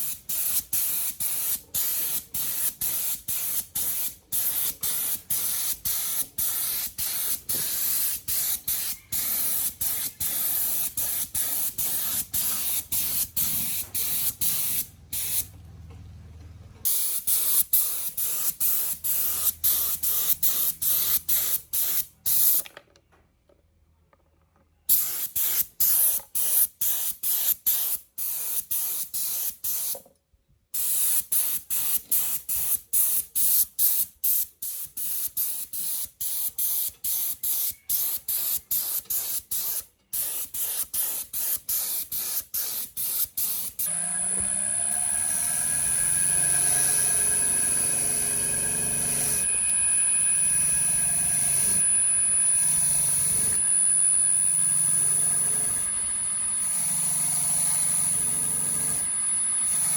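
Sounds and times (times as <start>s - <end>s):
spray hissing in bursts: 0.3s - 15.4s.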